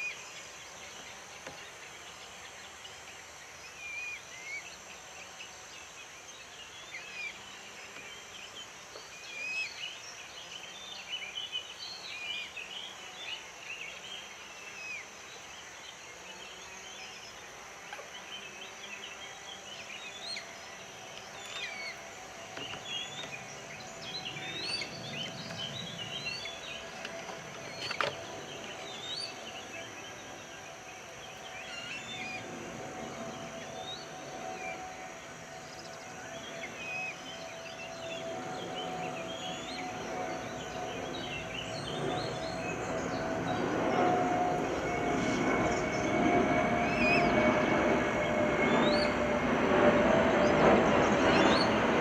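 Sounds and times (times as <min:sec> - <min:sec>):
high-pitched insect drone: 0:10.7 - 0:52.0
birds chirping: 0:18.0 - 0:52.0.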